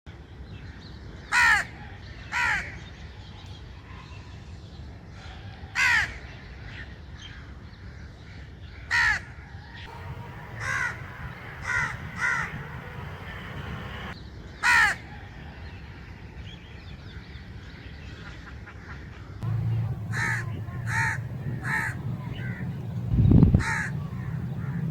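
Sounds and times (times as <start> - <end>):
crow cawing: 1.4 - 1.6, 9.9 - 15.0, 19.4 - 24.9
low background rumble: 9.9 - 14.2, 19.4 - 24.9.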